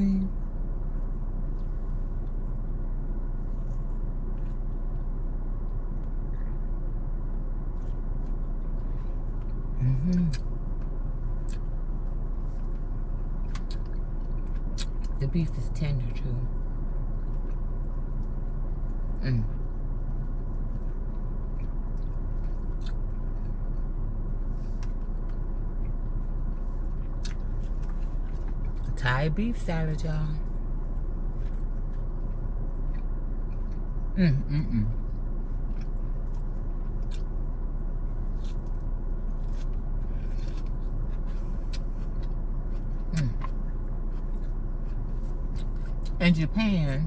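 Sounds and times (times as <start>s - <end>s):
car engine idling: 0.0s - 47.0s
person chewing: 3.4s - 6.6s, 7.7s - 15.2s, 17.0s - 28.9s, 30.6s - 34.2s, 34.8s - 46.2s
faint chewing clicks: 12.6s - 15.2s, 17.2s - 24.0s, 24.8s - 28.9s, 31.4s - 34.2s, 35.0s - 37.3s.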